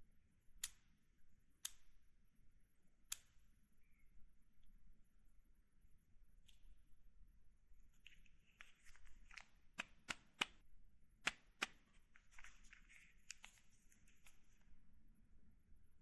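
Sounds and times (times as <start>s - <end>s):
sharp plastic clicks: 3.1s - 3.3s
soft plastic rustling: 7.8s - 10.6s, 11.4s - 14.8s.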